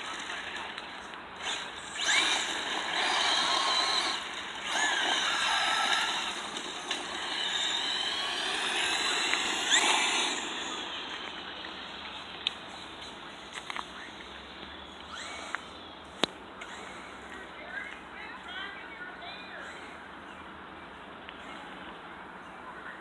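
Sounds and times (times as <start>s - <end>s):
electric motor whining: 1.4s - 11.7s, 15.0s - 15.8s.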